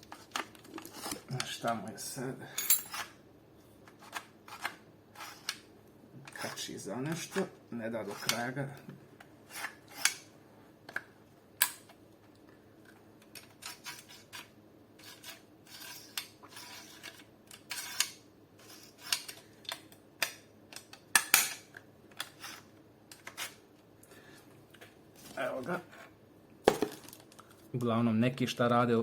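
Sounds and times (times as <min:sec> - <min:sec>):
metal rifle parts clicking and scraping: 0:08.1 - 0:08.5, 0:13.2 - 0:23.6.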